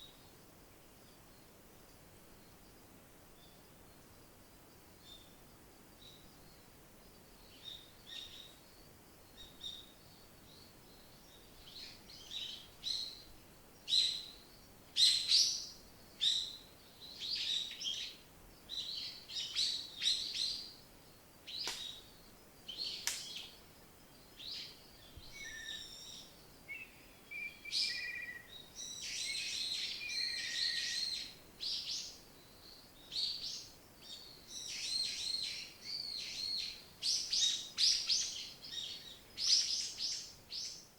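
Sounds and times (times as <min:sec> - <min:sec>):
low whistled bird notes: 0:25.0 - 0:31.2.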